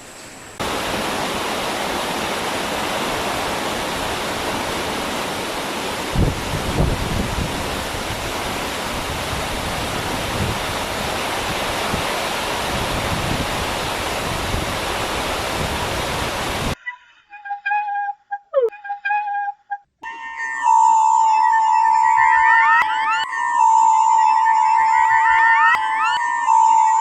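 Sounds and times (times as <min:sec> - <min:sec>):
short whistle-like tones: 0:16.8 - 0:27.0.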